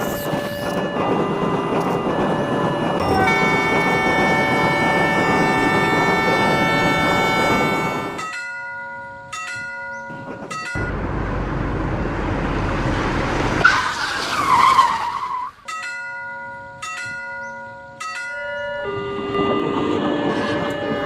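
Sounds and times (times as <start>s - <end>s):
railroad crossing bell ringing: 0.0s - 11.0s, 15.6s - 21.0s
car tire screech and skid: 12.1s - 15.7s.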